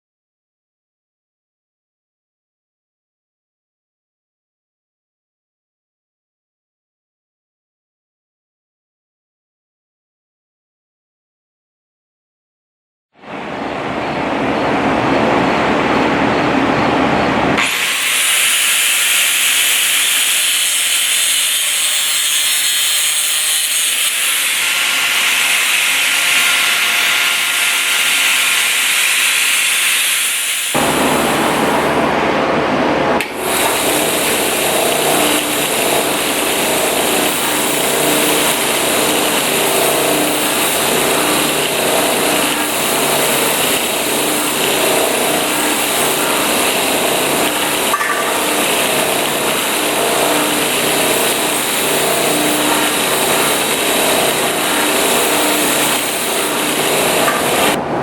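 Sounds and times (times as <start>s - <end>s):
power tool grinding steel: 17.6s - 32.0s, 33.2s - 57.8s.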